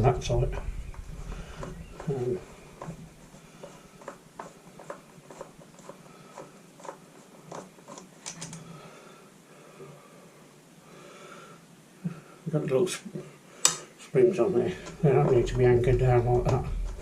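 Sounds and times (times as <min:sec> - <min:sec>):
clicks and taps of plastic parts: 0:00.6 - 0:08.6.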